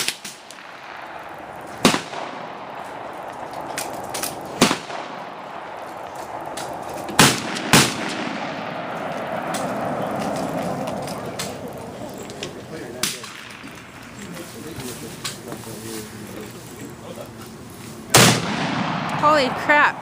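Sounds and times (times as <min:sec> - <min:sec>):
rifle shots: 0:00.0 - 0:11.7, 0:18.1 - 0:20.0.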